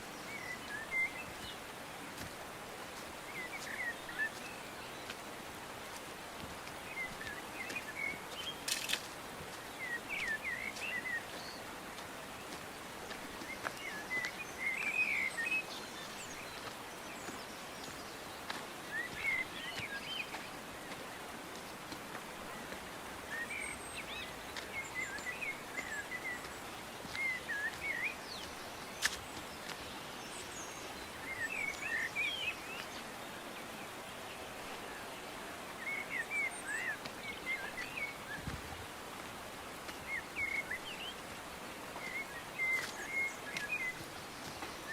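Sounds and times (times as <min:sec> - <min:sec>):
small birds chirping: 0:00.0 - 0:44.9
steady outdoor hiss: 0:00.0 - 0:44.9.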